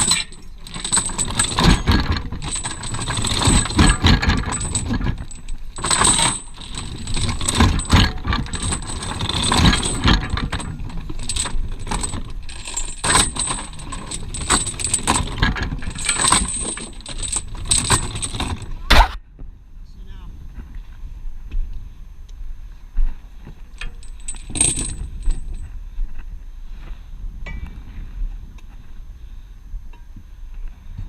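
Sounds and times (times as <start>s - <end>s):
anchor chain clattering: 0.0s - 18.8s, 23.8s - 25.6s.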